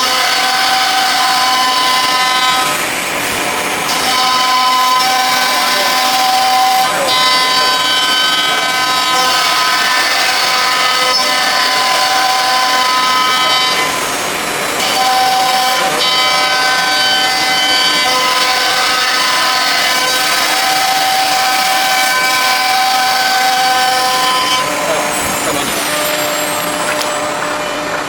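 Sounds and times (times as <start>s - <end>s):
router cutting board: 0.0s - 28.0s
router spindle whine: 0.0s - 28.0s.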